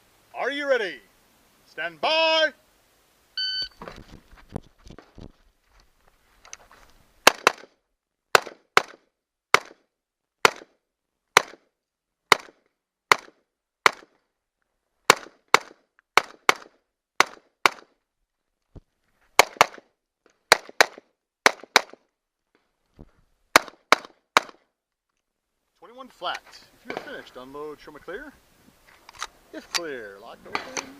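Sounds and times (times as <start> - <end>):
gunshots: 7.2 - 9.8, 10.4 - 10.7, 11.4 - 11.6, 12.3 - 14.1, 15.1 - 17.9, 19.4 - 19.9, 20.5 - 22.0, 23.5 - 24.6.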